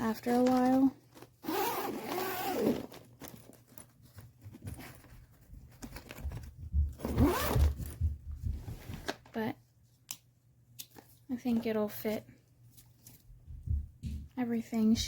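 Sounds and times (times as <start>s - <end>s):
zipper being pulled: 1.4s - 3.0s, 7.0s - 7.8s.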